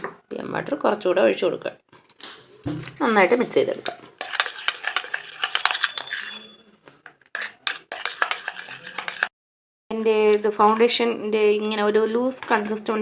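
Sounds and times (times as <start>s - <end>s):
spoon scraping and clinking in bowl: 2.9s - 9.3s, 12.4s - 12.9s.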